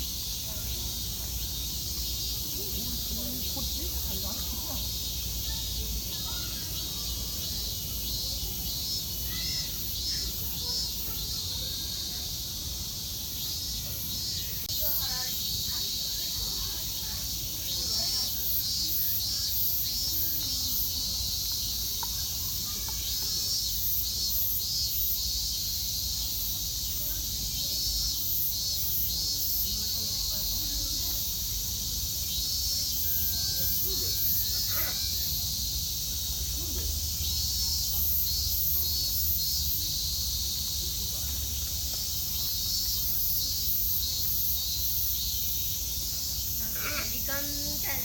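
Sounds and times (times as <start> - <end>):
cicadas singing: 0.0 - 48.0
insects chirring: 0.0 - 48.0.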